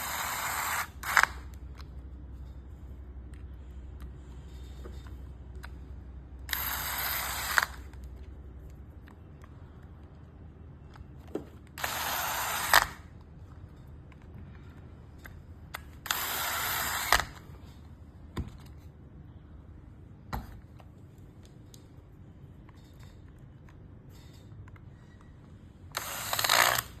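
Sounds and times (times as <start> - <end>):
small electric motor running: 0.0 - 1.4, 6.5 - 7.8, 11.8 - 13.0, 16.0 - 17.4, 26.0 - 27.0.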